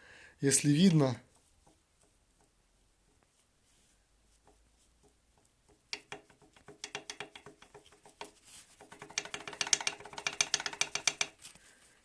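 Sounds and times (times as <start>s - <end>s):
metal clicks and light knocks: 4.5s - 11.4s.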